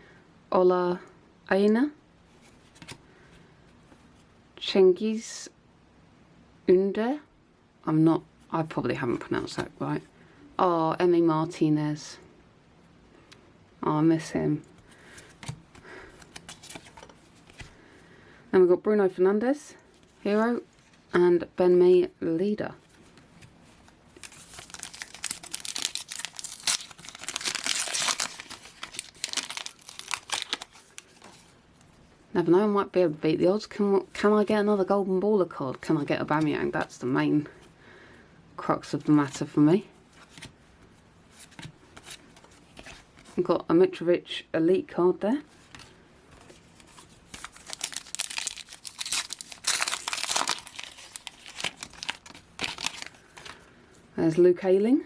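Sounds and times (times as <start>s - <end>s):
wrapper crinkling and tearing: 24.2s - 31.5s, 46.8s - 53.6s.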